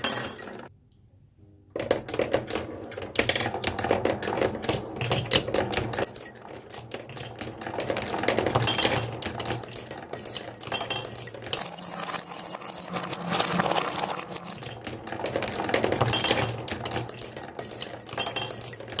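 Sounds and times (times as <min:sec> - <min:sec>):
marbles rolling on wooden track: 0:00.0 - 0:00.7, 0:01.8 - 0:19.0
ringing clinks: 0:00.0 - 0:00.7, 0:09.6 - 0:13.0, 0:17.1 - 0:19.0.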